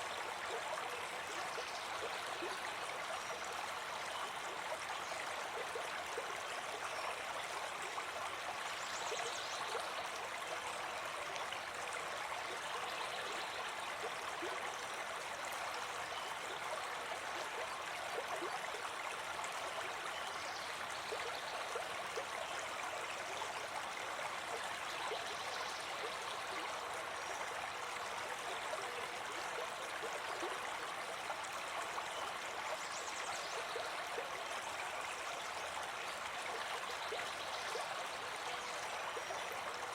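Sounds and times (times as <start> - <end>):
brook babbling over stones: 0.0 - 39.9.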